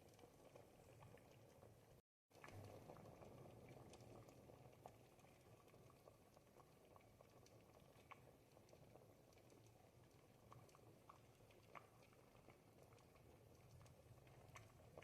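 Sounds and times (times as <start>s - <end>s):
soup simmering with bubbling pops: 0.0s - 15.0s.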